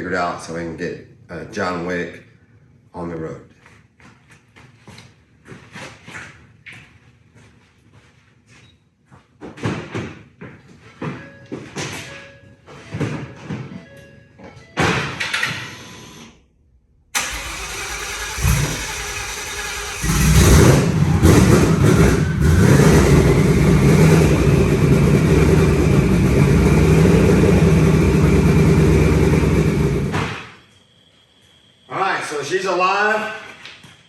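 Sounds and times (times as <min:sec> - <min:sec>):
car engine cranking and idling: 0:17.2 - 0:30.2.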